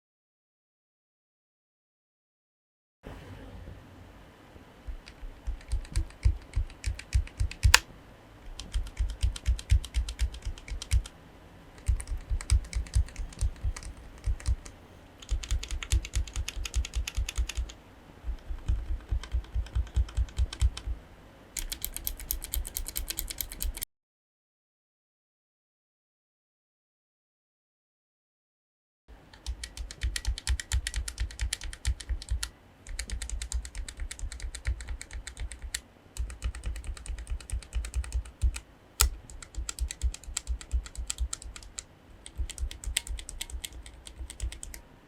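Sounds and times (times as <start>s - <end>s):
mechanical keyboard switches clicking: 4.9s - 7.9s, 8.5s - 11.1s, 11.8s - 20.9s, 21.6s - 23.8s, 29.3s - 44.8s.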